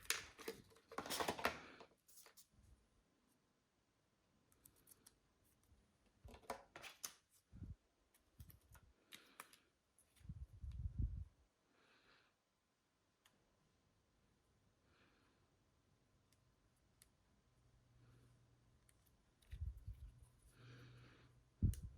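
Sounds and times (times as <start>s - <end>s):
plastic packaging clicks and rustles: 0.0s - 2.3s.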